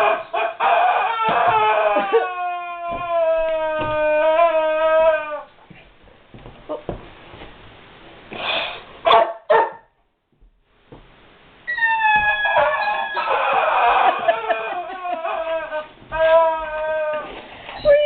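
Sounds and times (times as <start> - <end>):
dog whining: 0.0 - 5.5, 11.6 - 18.0
dog barking: 9.0 - 9.9.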